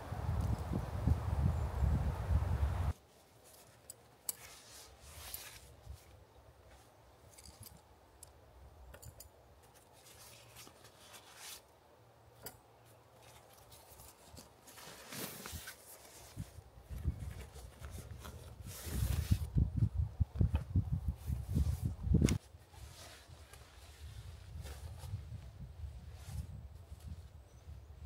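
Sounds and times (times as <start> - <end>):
small clicks and rustles: 3.0 - 11.6, 12.4 - 18.6.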